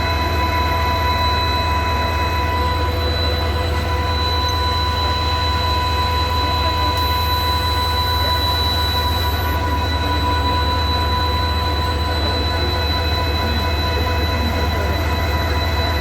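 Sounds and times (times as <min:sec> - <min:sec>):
high-pitched whining tones: 0:00.0 - 0:16.0.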